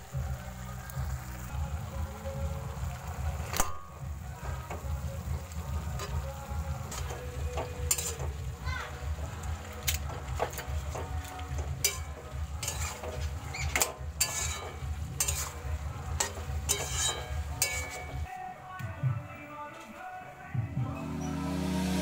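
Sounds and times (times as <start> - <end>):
food sizzling in a pan: 0.0 - 18.3
spatula scraping a pan: 6.9 - 8.4, 9.9 - 18.3.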